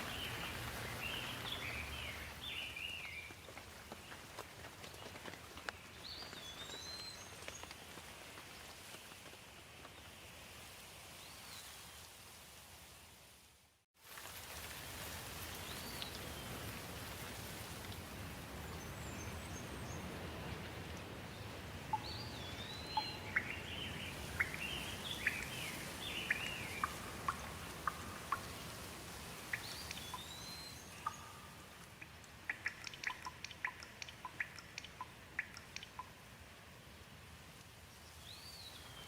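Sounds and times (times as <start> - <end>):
birds calling and chirping: 0.0 - 3.3, 21.9 - 28.8, 29.4 - 36.1
rain hiss: 0.0 - 39.0.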